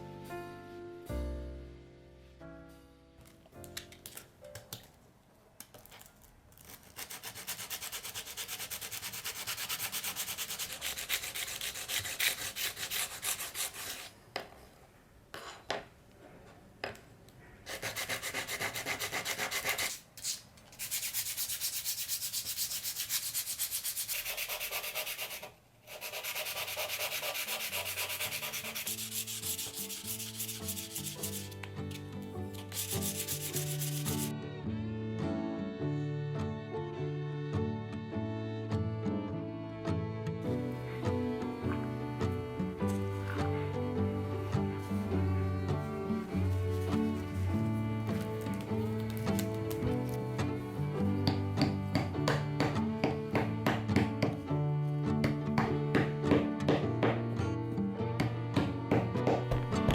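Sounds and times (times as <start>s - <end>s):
hand-sanding wood: 7.0s - 14.1s, 17.7s - 31.6s, 32.5s - 34.3s.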